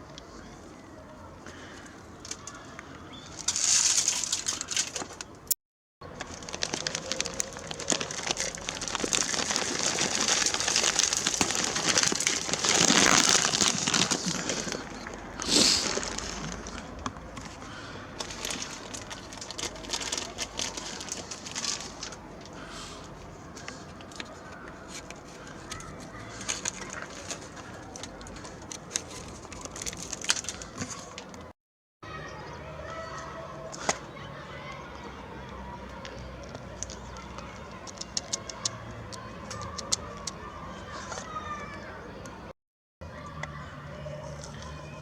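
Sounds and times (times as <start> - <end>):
dense crackling rustle: 3.4 - 5.3, 6.1 - 17.6, 18.2 - 22.6, 26.2 - 31.4
birds calling: 12.7 - 16.5.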